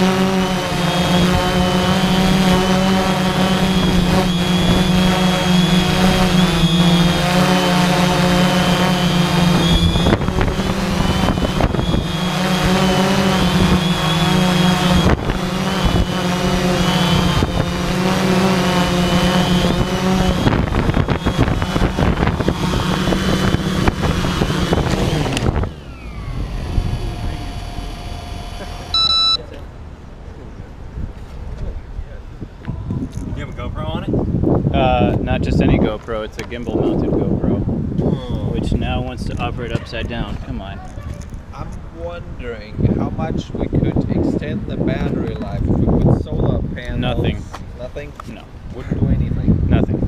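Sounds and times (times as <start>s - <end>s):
drone motors humming and whining: 0.0s - 30.8s
gusty wind: 0.0s - 50.0s.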